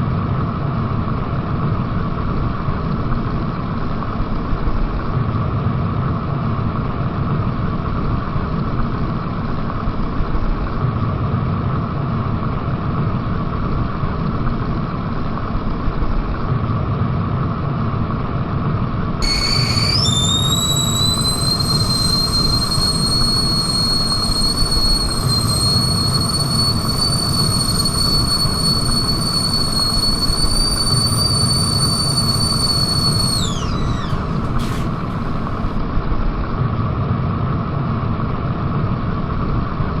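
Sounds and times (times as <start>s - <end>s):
kettle whistling: 19.2s - 35.8s.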